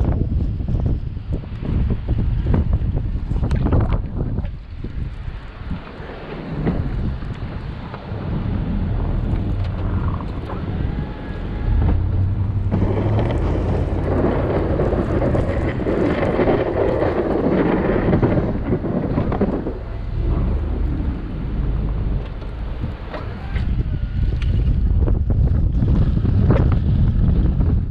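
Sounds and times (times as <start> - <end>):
wind buffeting microphone: 0.0 - 27.9
snow plow engine rumbling: 4.9 - 27.9
loud rushing noise: 7.5 - 23.1.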